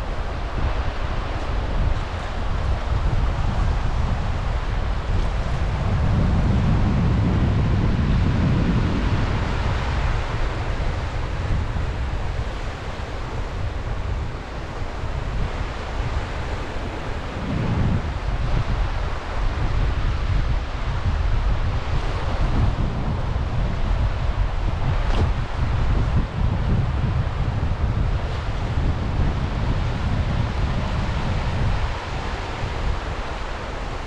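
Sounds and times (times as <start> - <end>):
wind buffeting microphone: 0.0 - 34.0
sea waves on shore: 8.0 - 22.8, 27.9 - 34.0.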